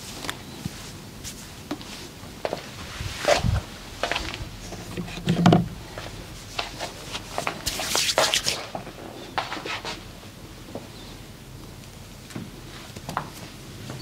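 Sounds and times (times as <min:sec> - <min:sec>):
hands rubbing skin and fabric: 0:00.2 - 0:04.4, 0:06.0 - 0:08.8.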